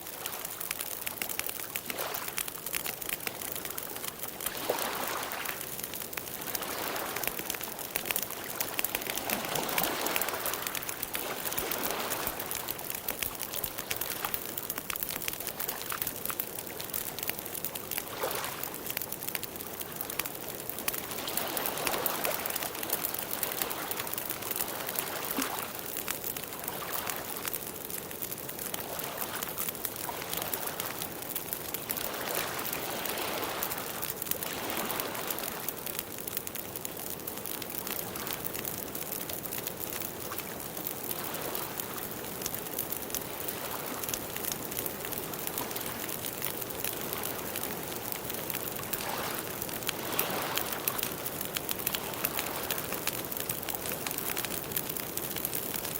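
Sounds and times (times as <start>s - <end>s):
campfire crackling and popping: 0.0s - 55.9s
steady fire hiss: 0.0s - 55.9s.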